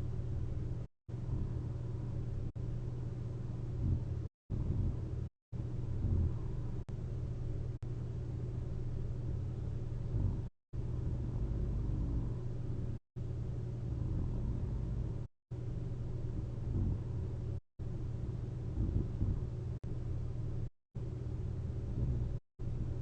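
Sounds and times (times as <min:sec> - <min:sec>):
person snoring softly: 0:01.1 - 0:02.1, 0:03.8 - 0:05.0, 0:05.8 - 0:06.9, 0:10.0 - 0:12.8, 0:13.8 - 0:15.3, 0:16.4 - 0:17.3, 0:18.7 - 0:19.6, 0:21.8 - 0:22.4.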